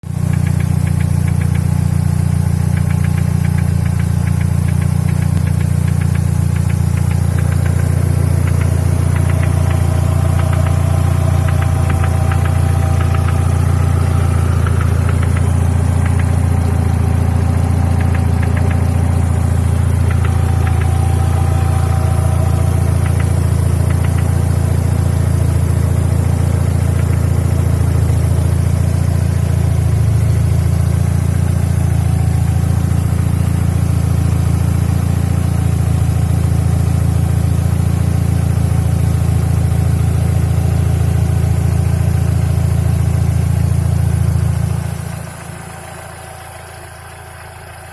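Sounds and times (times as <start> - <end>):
car engine idling: 0.0 - 47.9
rapid ticking knock: 0.2 - 28.3.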